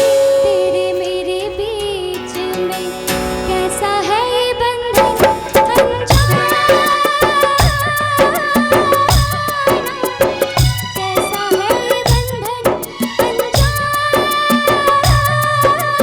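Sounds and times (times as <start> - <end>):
drum rhythm: 5.0 - 16.0.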